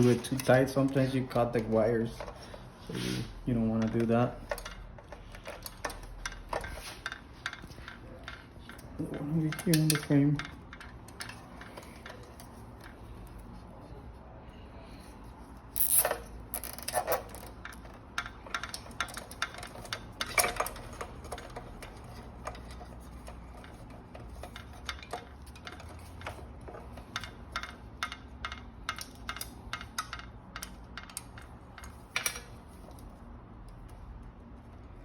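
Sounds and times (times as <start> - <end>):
wires rustling and knocking: 3.6 - 13.2
cable ties ratcheting clicks: 3.8 - 13.0, 15.8 - 34.0.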